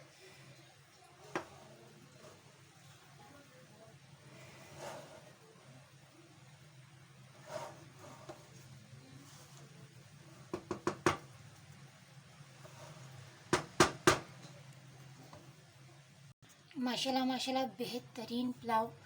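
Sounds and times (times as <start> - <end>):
spoon knocking on pot rim: 10.5 - 11.3.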